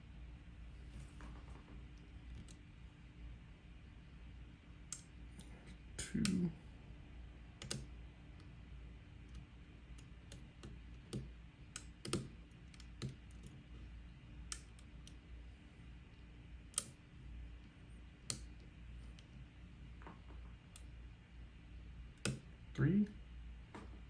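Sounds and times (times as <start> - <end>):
lock pick clicking on pins: 7.6 - 7.9, 10.0 - 13.6, 16.7 - 17.0.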